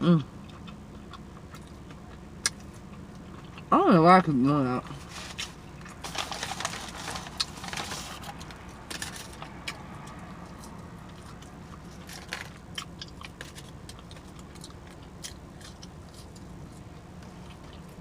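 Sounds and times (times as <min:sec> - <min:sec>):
chewing and lip smacking: 0:00.4 - 0:03.7, 0:09.4 - 0:18.0.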